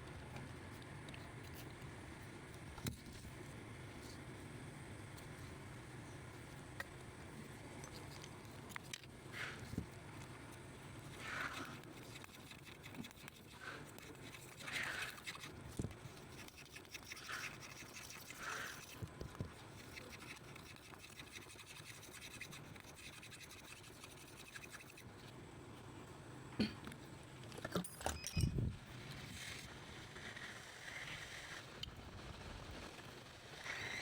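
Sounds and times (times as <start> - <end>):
faint tool scraping: 7.4 - 25.4.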